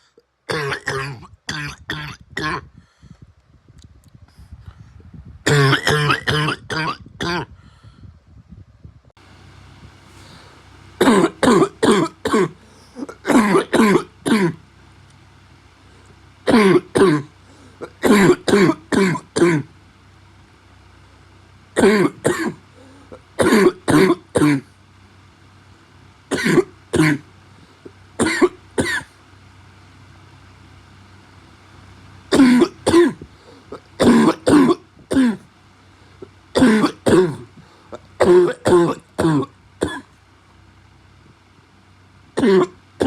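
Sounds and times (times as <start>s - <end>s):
faint steady hum: 0.0s - 43.0s
man's barking cough: 0.5s - 2.6s, 5.5s - 7.5s, 11.0s - 14.6s, 16.5s - 19.7s, 21.8s - 22.6s, 23.4s - 24.7s, 26.3s - 27.2s, 28.2s - 29.1s, 32.3s - 33.2s, 33.8s - 35.5s, 36.6s - 37.5s, 38.2s - 40.1s, 42.4s - 42.8s.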